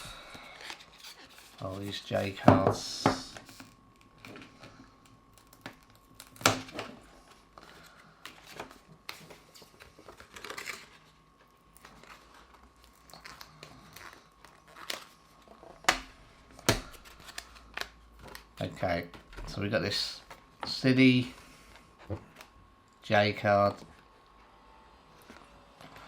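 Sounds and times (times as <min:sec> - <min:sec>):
card and packaging crinkling: 0:07.5 - 0:15.9.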